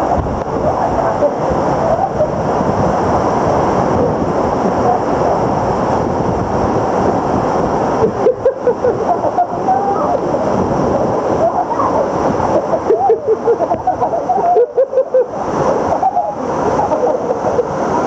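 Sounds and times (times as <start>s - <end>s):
water splashing and gurgling: 0.0s - 18.0s
waterfall rushing: 0.0s - 18.0s.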